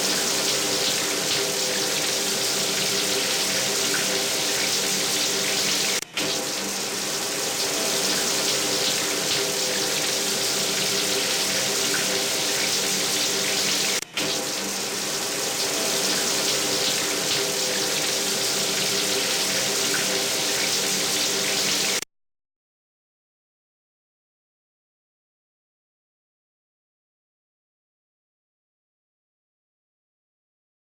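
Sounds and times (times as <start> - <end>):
shower spraying water: 0.0 - 22.0.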